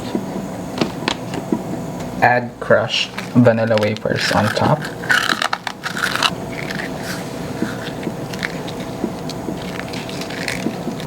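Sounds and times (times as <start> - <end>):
cookies being crushed: 2.7 - 11.0.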